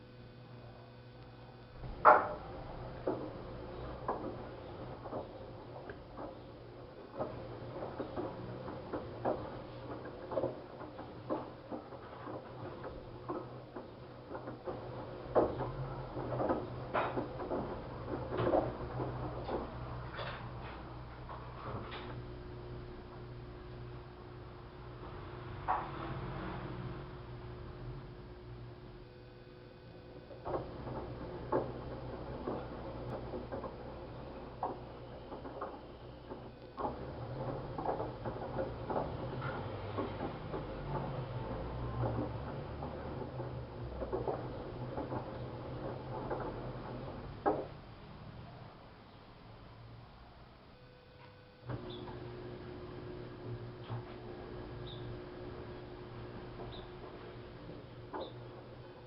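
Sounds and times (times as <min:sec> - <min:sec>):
washing machine motor hum: 0:00.0 - 0:50.8, 0:51.6 - 0:59.0
knocks and clunks of turning load: 0:01.8 - 0:22.4, 0:30.2 - 0:48.0, 0:51.6 - 0:59.0.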